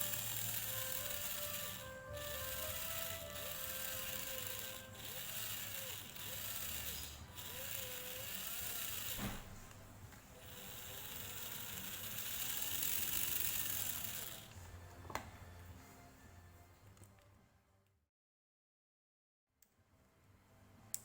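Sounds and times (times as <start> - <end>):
small geared mechanism whirring: 0.0 - 9.8, 10.4 - 14.6.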